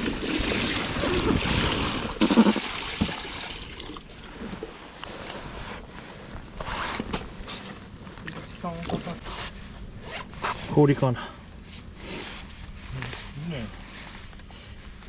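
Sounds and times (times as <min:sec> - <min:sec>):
water sloshing and splashing: 0:00.0 - 0:05.0.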